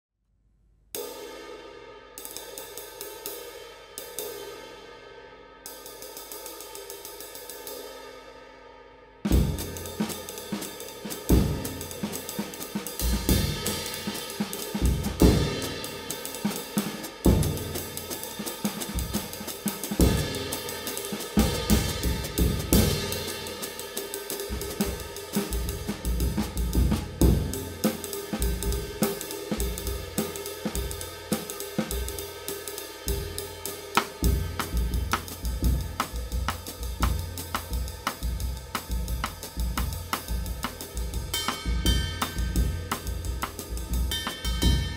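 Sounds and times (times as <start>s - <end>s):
cymbals and hi-hat ringing: 1.0s - 44.9s
kick and snare drum hits: 9.3s - 23.6s, 24.5s - 32.1s, 34.0s - 44.9s.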